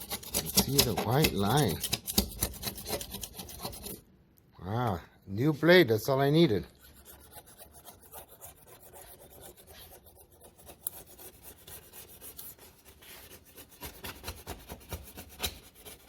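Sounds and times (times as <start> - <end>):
blade scraping stove top: 0.0 - 4.0.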